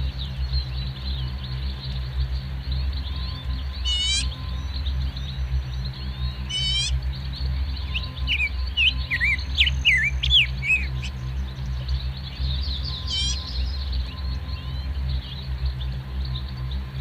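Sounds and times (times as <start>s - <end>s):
birds chirping: 0.0s - 17.0s
steady low drone: 0.0s - 17.0s
fast rising bird trill: 3.8s - 4.3s, 6.4s - 7.0s, 8.3s - 11.2s, 12.7s - 13.7s.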